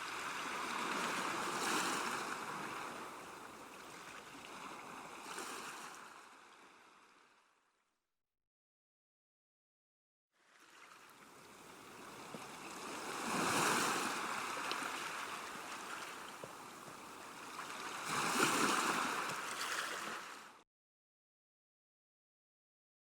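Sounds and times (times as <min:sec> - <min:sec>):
river water washing against bank: 0:12.0 - 0:20.4.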